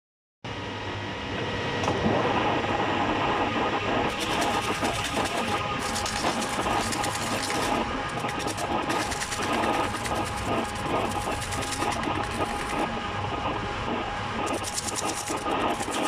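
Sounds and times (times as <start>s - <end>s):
machinery whirring: 2.1s - 16.0s
rapid fine clicking: 4.1s - 12.9s, 14.4s - 16.0s.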